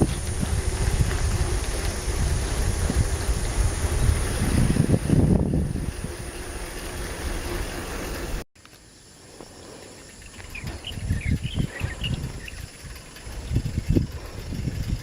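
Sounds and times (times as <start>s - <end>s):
wind buffeting microphone: 0.0s - 7.6s, 10.1s - 15.0s
high bird chirps: 10.3s - 12.8s.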